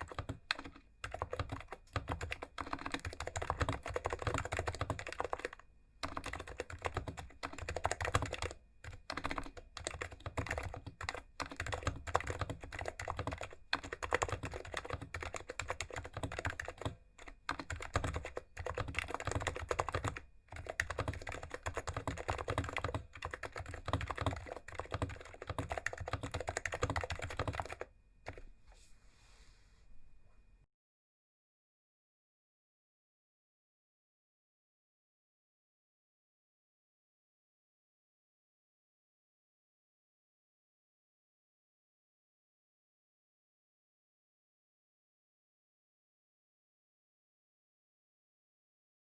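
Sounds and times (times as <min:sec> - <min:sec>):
fast keyboard typing: 0:00.0 - 0:28.5.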